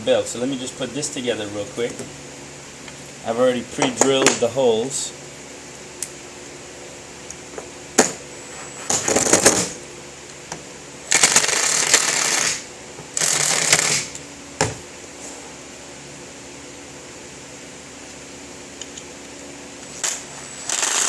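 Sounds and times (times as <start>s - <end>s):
power drill driving screws: 11.1s - 12.6s, 13.2s - 14.1s, 20.0s - 21.0s.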